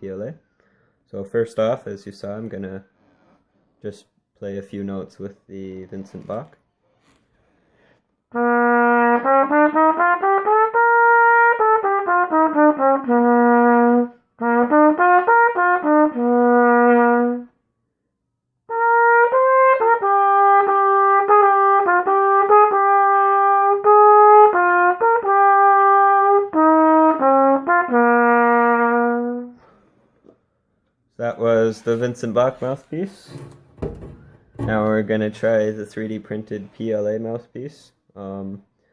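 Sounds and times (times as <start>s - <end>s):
trumpet playing scales: 8.3s - 17.5s, 18.7s - 29.7s.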